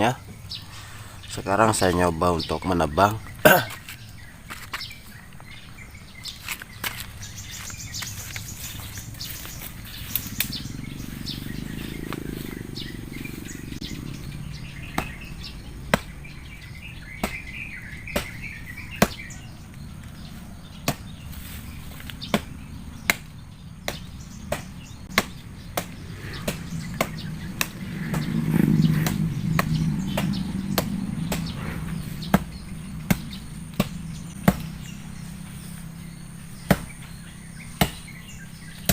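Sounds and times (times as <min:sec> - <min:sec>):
birds chirping: 0:00.0 - 0:38.9
low rumble: 0:07.4 - 0:16.8, 0:24.9 - 0:36.3
blade chopping into tree: 0:14.9 - 0:15.3, 0:15.9 - 0:16.2, 0:17.1 - 0:19.4, 0:20.8 - 0:21.2, 0:21.9 - 0:31.6, 0:32.3 - 0:34.9, 0:36.6 - 0:38.9.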